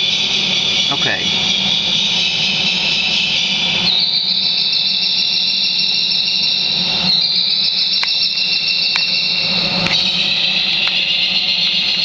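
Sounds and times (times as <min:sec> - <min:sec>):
electronic bird chirps: 0:03.8 - 0:12.0
low hum: 0:06.6 - 0:12.0
sharp click: 0:08.9 - 0:09.1.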